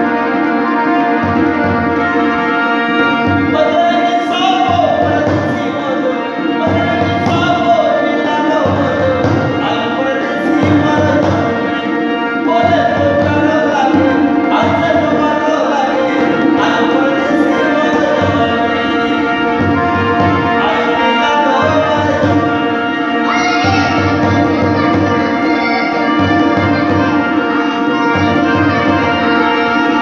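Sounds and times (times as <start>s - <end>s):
harmonium chords: 0.0s - 30.0s
hand drum beat: 1.2s - 3.7s, 6.6s - 11.8s, 23.3s - 30.0s
person singing: 22.8s - 30.0s.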